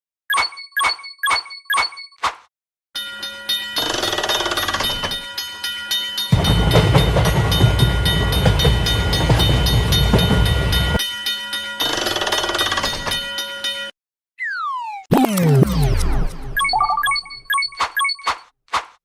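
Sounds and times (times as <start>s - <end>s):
level crossing bell ringing: 3.0s - 13.9s
train rumbling and clattering: 6.2s - 11.0s.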